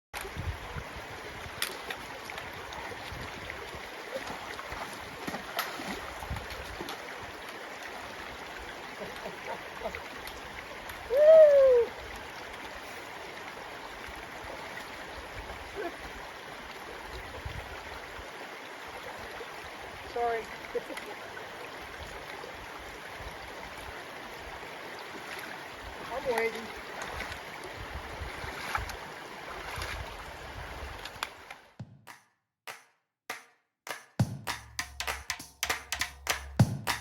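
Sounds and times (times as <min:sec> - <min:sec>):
river running over rocks: 0:00.2 - 0:31.8
sharp knocks: 0:31.8 - 0:37.0.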